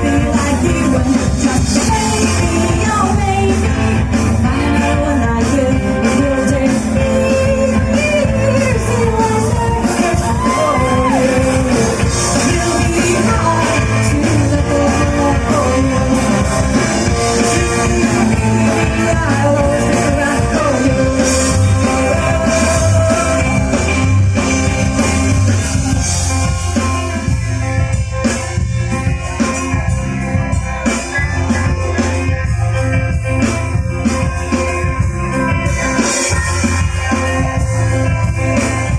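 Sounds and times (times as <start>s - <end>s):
person singing: 0.0s - 26.0s, 34.0s - 38.9s
live rock band playing: 0.0s - 38.9s.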